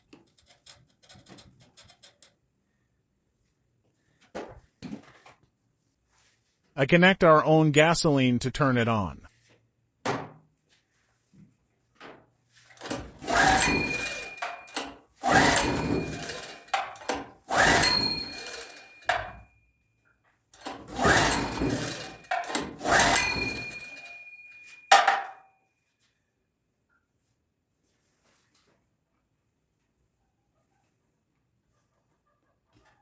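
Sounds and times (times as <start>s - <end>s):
generator recoil starter pulls: 12.7s - 19.4s, 20.6s - 24.2s.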